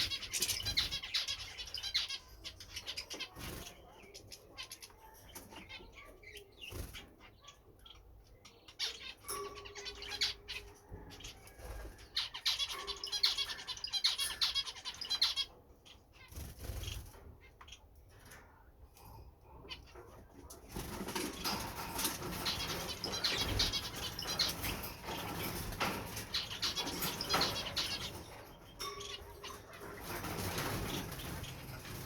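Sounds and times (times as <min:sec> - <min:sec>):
finches twittering: 0:19.2 - 0:32.0.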